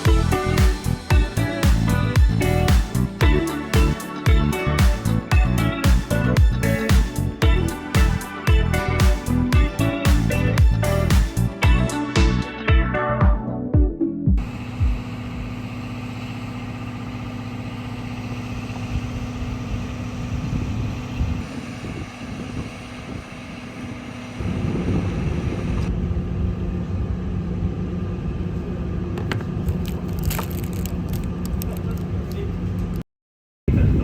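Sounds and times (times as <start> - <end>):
vehicle engine running: 0.0 - 12.4, 14.3 - 33.0.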